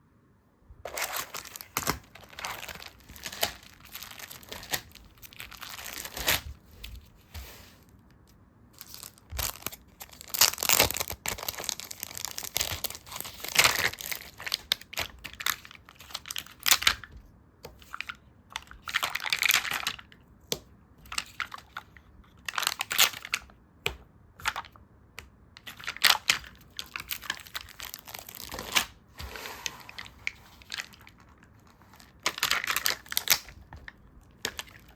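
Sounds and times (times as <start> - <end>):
paper crinkling and rustling: 0.9 - 8.0, 8.8 - 17.2, 25.7 - 34.9.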